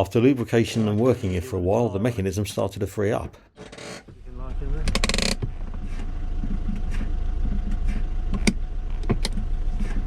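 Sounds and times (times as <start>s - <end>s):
steady low rumble: 4.1s - 10.0s
sharp metallic clicks and knocks: 4.8s - 5.6s.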